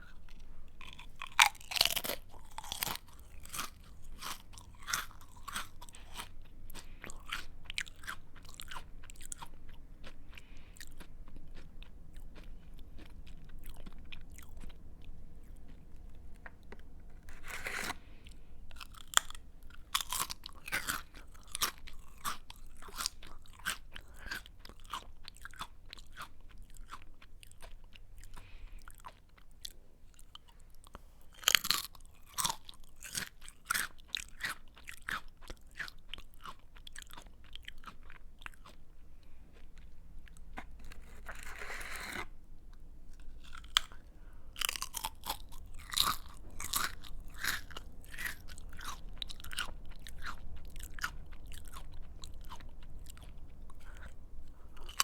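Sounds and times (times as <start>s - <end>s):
chewing crunchy snack: 0.0s - 55.0s.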